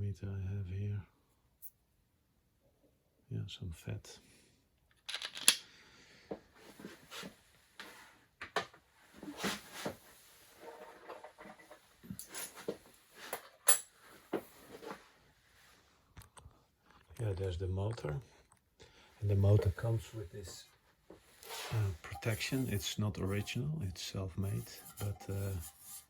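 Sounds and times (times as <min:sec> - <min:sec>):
tools clicking and knocking: 0:04.9 - 0:05.6.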